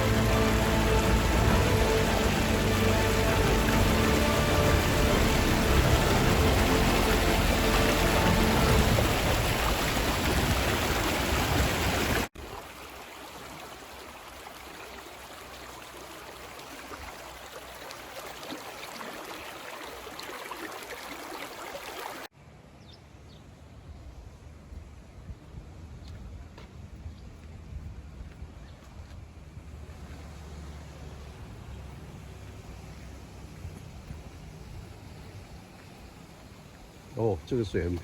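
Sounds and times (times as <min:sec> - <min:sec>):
creek water rushing over rocks: 0:00.0 - 0:22.3.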